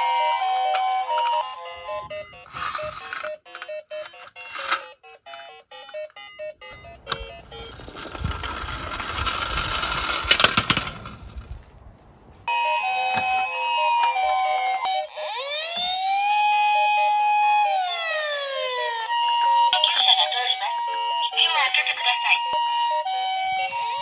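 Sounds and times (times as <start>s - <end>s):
ambulance siren sound effect: 0.0s - 4.0s, 12.5s - 24.0s
toy cars clattering and rolling: 0.4s - 1.8s, 2.4s - 11.6s.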